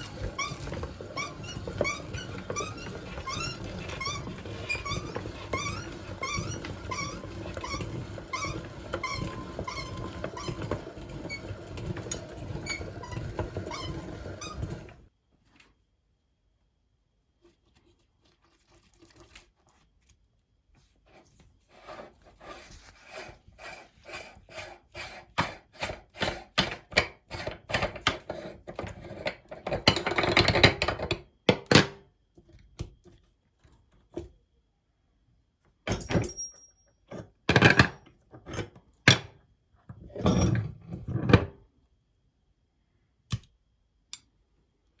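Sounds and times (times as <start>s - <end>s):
meat grinder clunking: 0.0s - 15.0s.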